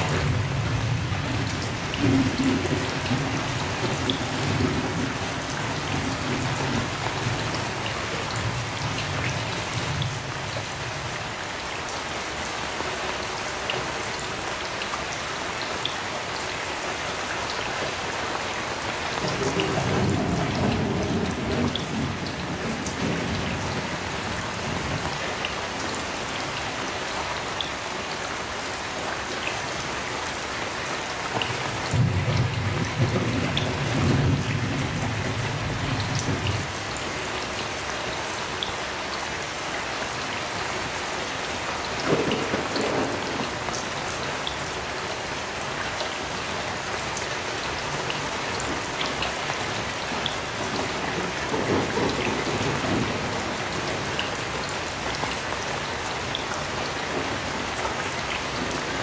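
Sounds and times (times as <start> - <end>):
low thunder rumble: 0.0 - 10.6, 19.2 - 25.2, 31.9 - 36.8, 42.1 - 43.6, 50.5 - 55.0
heavy rain falling: 0.0 - 59.0.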